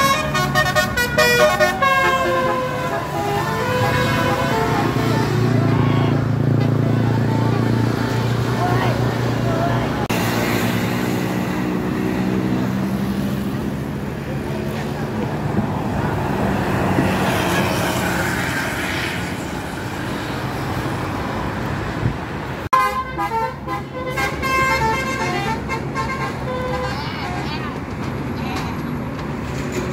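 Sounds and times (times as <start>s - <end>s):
bus horn playing tune: 0.0s - 5.8s, 22.7s - 27.1s
road noise: 0.0s - 29.9s.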